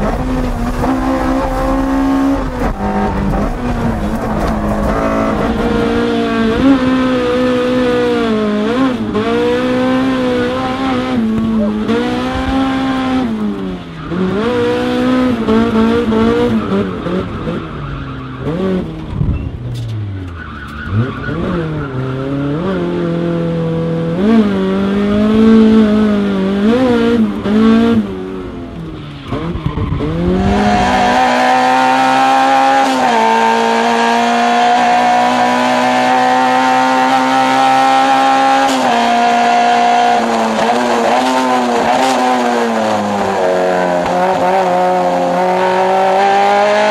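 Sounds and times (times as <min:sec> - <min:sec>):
car engine revving hard: 0:00.0 - 0:13.4, 0:29.3 - 0:46.9.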